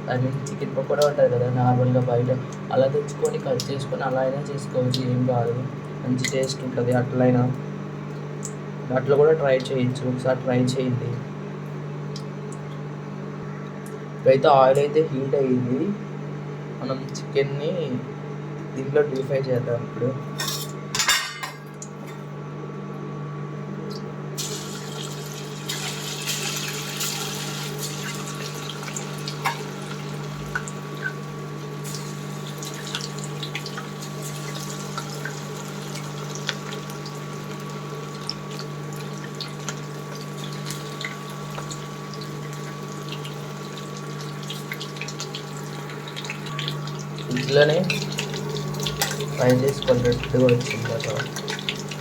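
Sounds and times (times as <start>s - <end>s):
chicken sizzling in hot oil: 24.4s - 52.0s.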